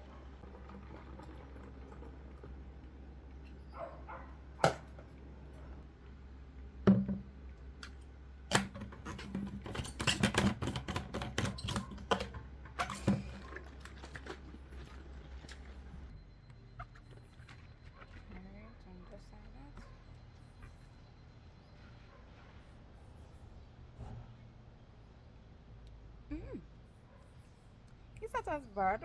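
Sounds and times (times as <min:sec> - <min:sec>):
kitchen items knocking and clattering: 0:08.6 - 0:13.4.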